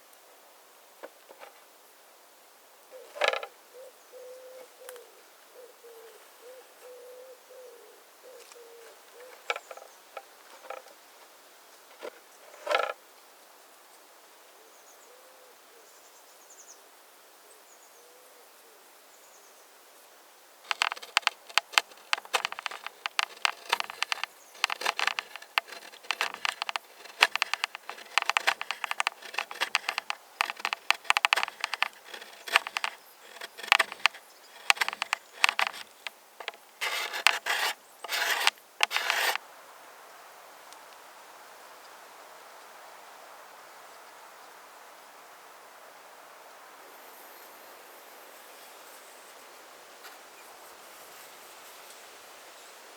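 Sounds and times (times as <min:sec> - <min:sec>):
knife scraping wood: 0:20.7 - 0:39.4.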